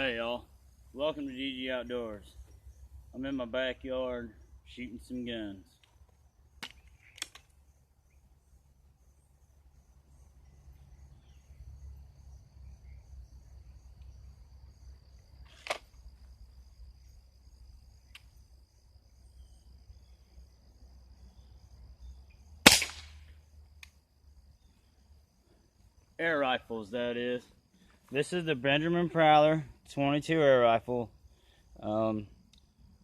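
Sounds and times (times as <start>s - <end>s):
air rifle shot: 22.6s - 23.3s.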